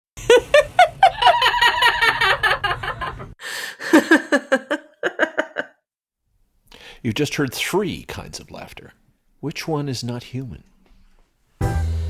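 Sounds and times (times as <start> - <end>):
people laughing: 0.2 - 5.7
parrot imitating laughter: 0.3 - 3.3, 3.9 - 5.8.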